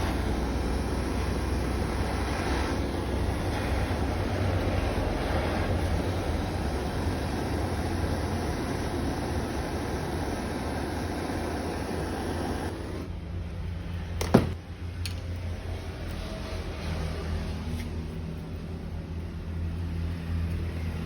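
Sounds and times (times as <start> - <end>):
hiss: 0.0 - 13.1
mechanical hum: 0.0 - 21.0.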